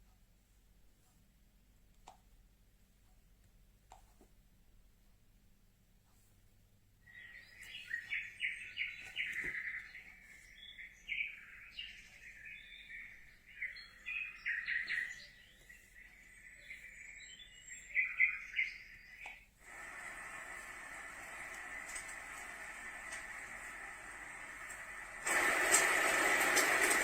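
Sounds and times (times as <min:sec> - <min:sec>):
recorded birdsong chirps and trills: 0:07.0 - 0:27.0
sound machine steady hiss: 0:07.1 - 0:27.0.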